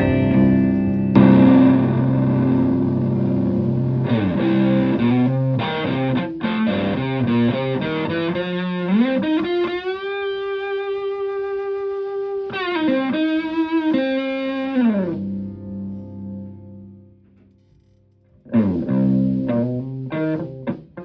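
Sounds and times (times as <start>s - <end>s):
fuzzed electric guitar: 0.0s - 10.8s, 18.5s - 21.0s.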